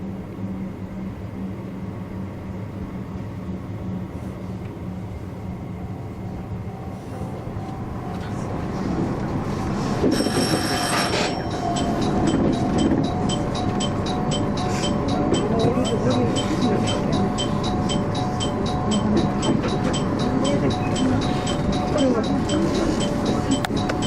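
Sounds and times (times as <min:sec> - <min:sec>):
train wheels and motors rumbling: 0:00.0 - 0:24.0
bell ringing: 0:10.2 - 0:24.0.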